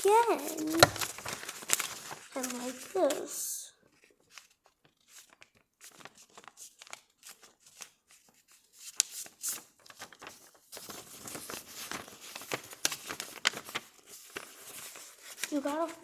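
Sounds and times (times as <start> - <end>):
paper being folded and crinkled: 0.0 - 3.2, 4.0 - 16.0.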